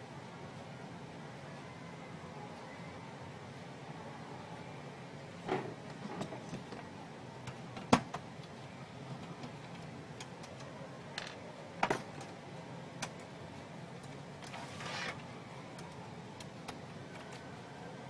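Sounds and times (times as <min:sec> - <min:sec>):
faint steady background noise: 0:00.0 - 0:18.0.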